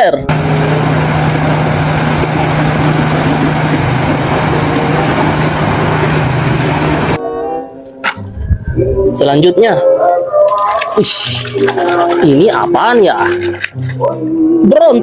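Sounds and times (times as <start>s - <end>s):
bulldozer engine running: 0.3s - 7.2s.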